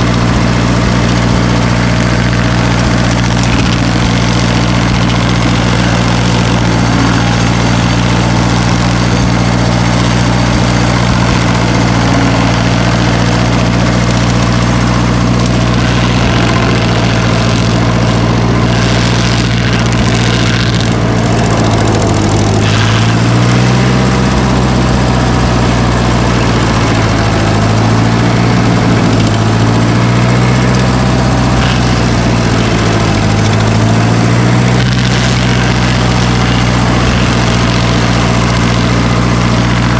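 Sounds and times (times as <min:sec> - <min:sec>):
machine engine running: 0:00.0 - 0:39.9.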